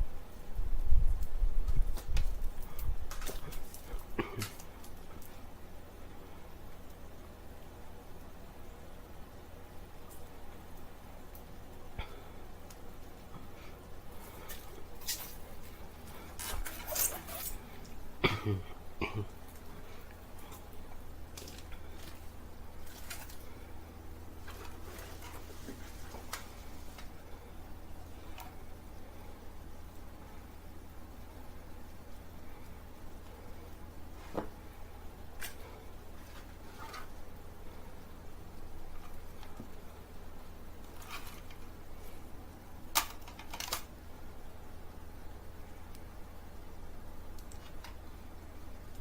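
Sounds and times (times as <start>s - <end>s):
steady low hum: 0.0s - 49.0s
rustling: 1.1s - 5.5s, 13.3s - 18.1s, 19.4s - 27.4s, 34.1s - 38.0s.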